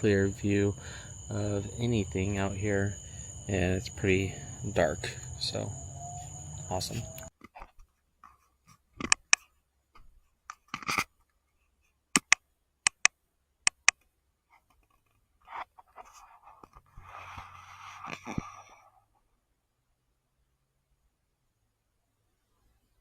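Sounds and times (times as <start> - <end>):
sharp clicks: 12.2 - 13.1, 13.7 - 14.0
rustling and scraping: 14.5 - 18.5.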